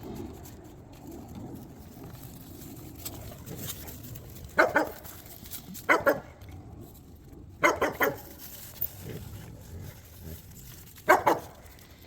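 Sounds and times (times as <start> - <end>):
dog barking: 4.6 - 5.0, 5.9 - 6.3, 7.6 - 8.2, 11.1 - 11.6.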